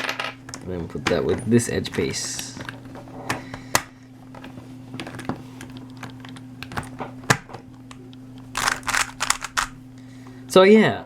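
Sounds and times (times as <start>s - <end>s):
plastic puzzle cube clicking: 8.6s - 9.7s.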